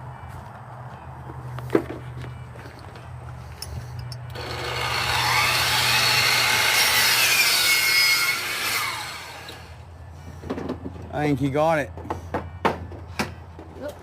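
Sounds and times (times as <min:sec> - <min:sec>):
miter saw cutting wood: 0:04.3 - 0:09.8.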